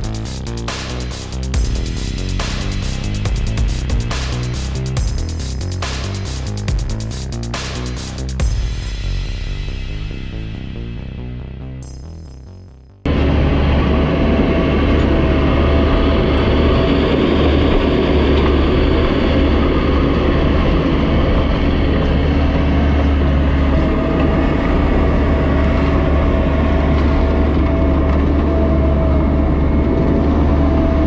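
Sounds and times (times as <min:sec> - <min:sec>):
music: 0:00.0 - 0:13.2
diesel engine running: 0:00.0 - 0:31.0.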